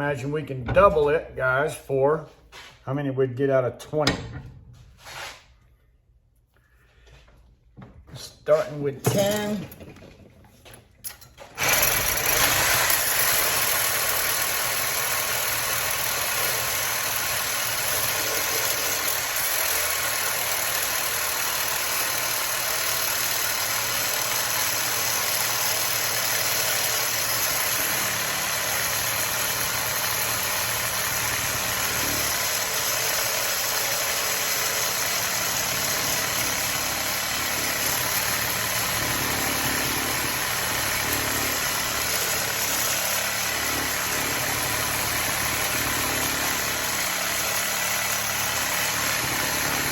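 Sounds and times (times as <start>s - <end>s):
power tool cutting steel: 8.8s - 9.7s, 11.4s - 49.9s.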